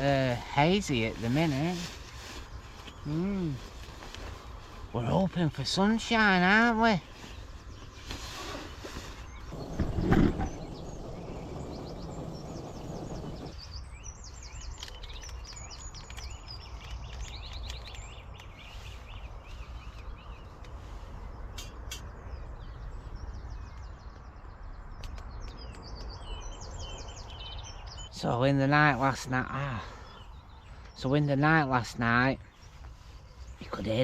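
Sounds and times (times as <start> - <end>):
birds singing: 0.0 - 34.0
rustling noise: 0.5 - 5.8, 7.0 - 11.9, 32.5 - 34.0
low background rumble: 9.4 - 14.4.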